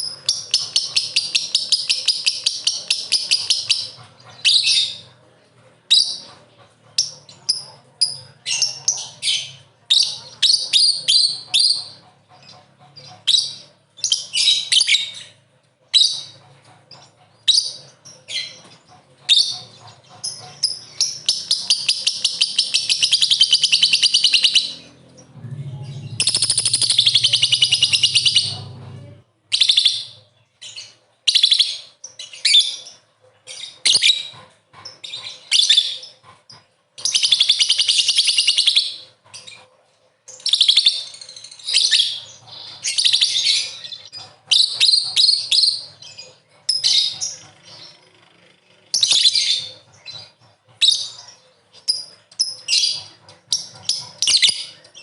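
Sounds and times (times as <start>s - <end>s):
lovebird chattering trills: 0.0s - 5.1s, 16.0s - 28.7s, 40.3s - 48.1s
shrill bird chirps: 19.3s - 28.6s.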